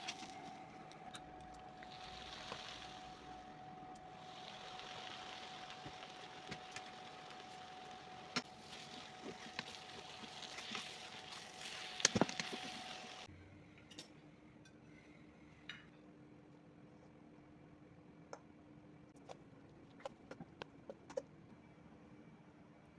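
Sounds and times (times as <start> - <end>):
food sizzling in a pan: 1.8 - 3.4, 4.1 - 13.3.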